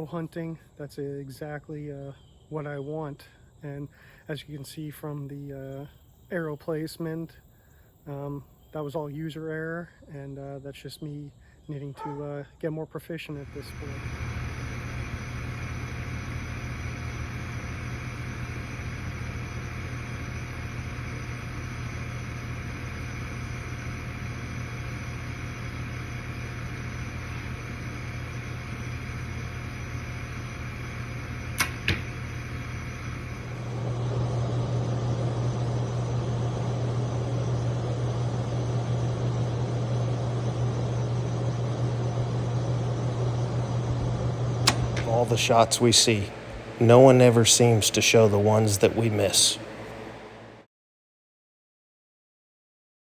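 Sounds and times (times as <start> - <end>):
low hum: 13.4 - 50.7.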